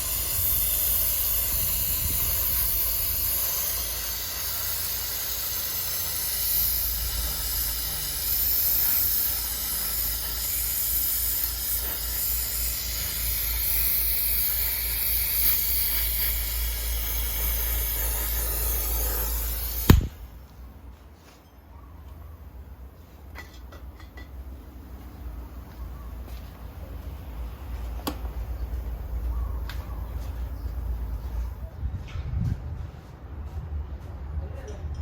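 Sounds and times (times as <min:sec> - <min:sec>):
torch flame popping: 0:00.0 - 0:20.7, 0:26.5 - 0:31.6
welding torch flame hissing: 0:00.0 - 0:20.7, 0:23.8 - 0:31.6.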